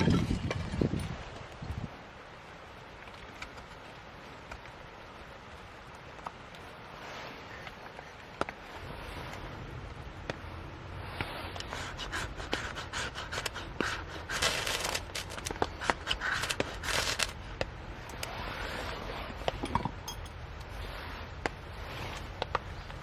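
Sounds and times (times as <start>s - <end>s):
scraping and rubbing: 11.5s - 17.4s.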